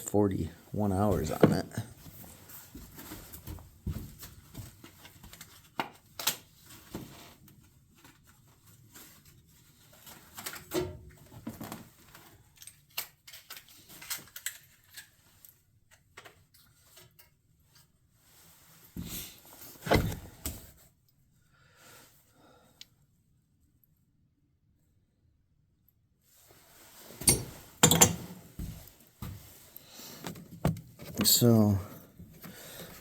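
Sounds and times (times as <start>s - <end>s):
clicks of metal tools handled: 27.2s - 28.4s.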